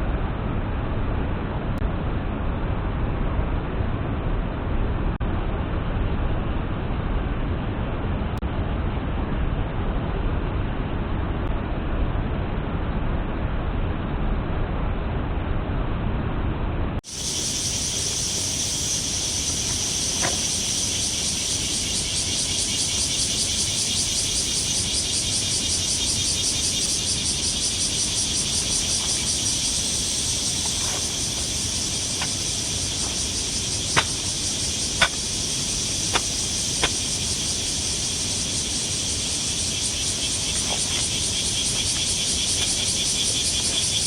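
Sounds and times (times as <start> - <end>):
outdoor ambience hiss: 17.0 - 44.0
sharp ticks: 17.2 - 44.0.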